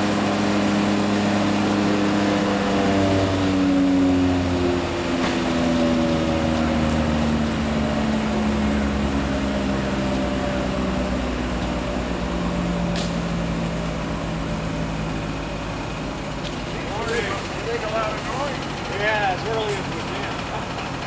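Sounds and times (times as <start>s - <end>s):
engine running: 0.0s - 21.0s.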